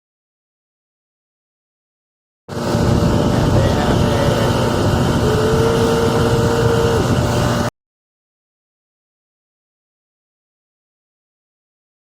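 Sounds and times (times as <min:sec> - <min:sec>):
boat motor running: 0:02.5 - 0:07.7
high steady whine: 0:02.5 - 0:07.7.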